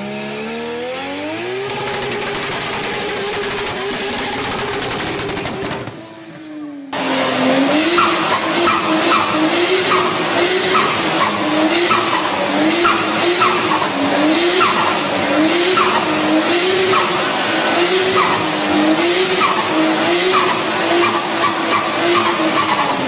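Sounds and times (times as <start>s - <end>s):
car tyres squealing: 7.0s - 23.0s.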